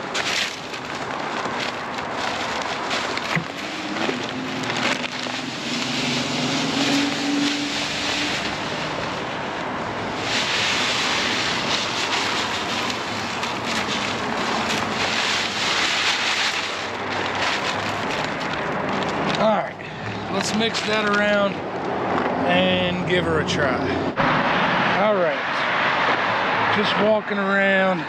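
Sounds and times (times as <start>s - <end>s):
steady rushing hiss: 5.2s - 18.9s.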